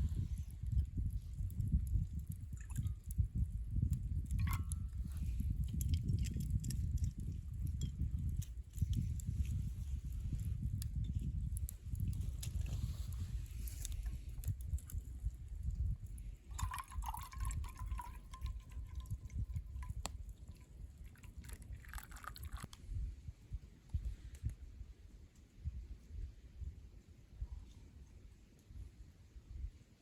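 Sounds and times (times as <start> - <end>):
liquid pouring and dripping: 0.4 - 22.8.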